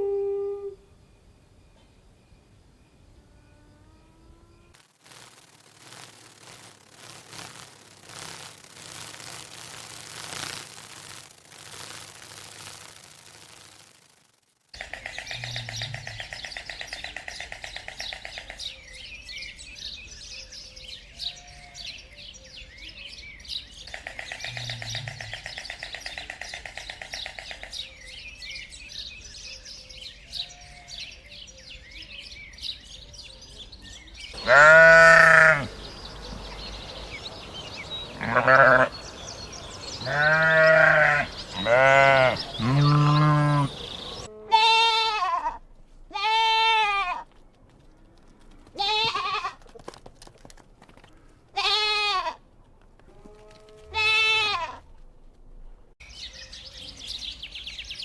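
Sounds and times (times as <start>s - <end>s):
high chirping: 34.3s - 44.3s
farm animal bleating: 34.4s - 36.4s, 38.1s - 47.4s, 48.7s - 49.7s, 51.5s - 52.4s, 53.1s - 54.9s.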